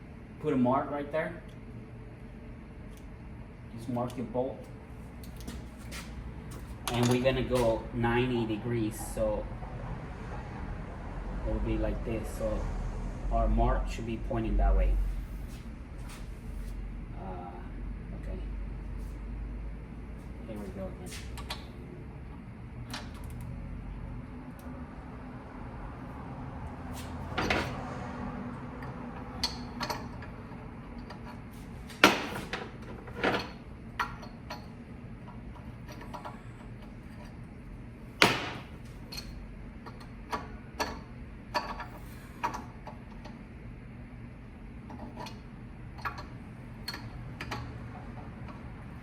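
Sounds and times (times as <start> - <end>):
steady low hum: 0.0 - 49.0.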